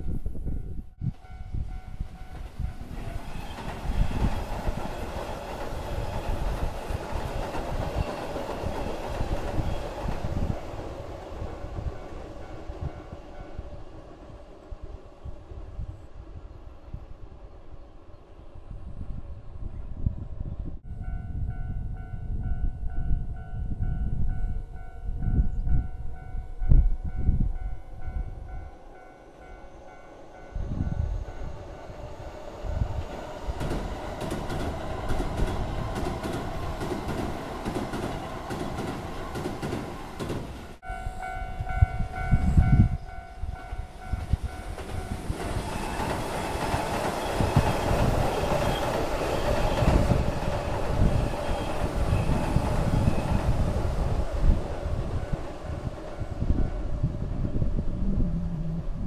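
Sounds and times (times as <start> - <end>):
electric train passing: 0.0 - 59.0
level crossing warning bell: 40.8 - 45.3
low rumbling buffeting: 49.8 - 59.0.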